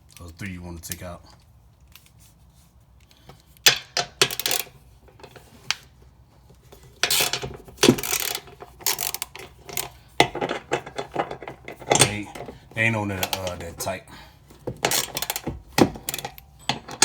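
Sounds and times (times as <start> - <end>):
ratchet clicking: 3.0 - 5.8, 6.8 - 12.6, 14.6 - 17.0
metal clanking on metal: 6.7 - 17.0.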